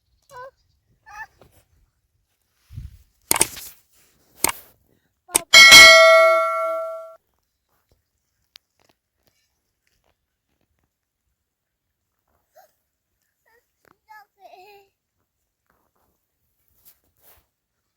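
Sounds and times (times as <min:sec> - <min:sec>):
sharp knocks: 0:05.4 - 0:07.1
loud metallic clang ringing: 0:05.4 - 0:07.2.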